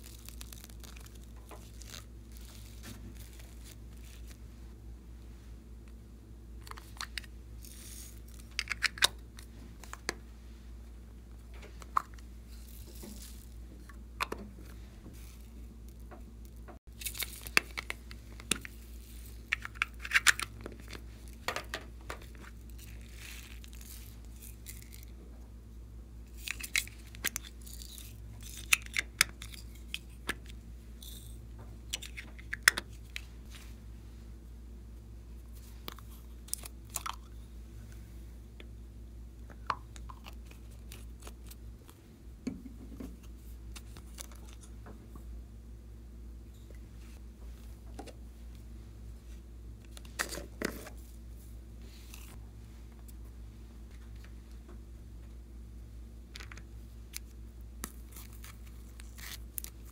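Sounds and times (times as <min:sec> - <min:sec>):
slime crackling and popping: 0:00.0 - 0:03.8
steady low hum: 0:00.0 - 0:59.9.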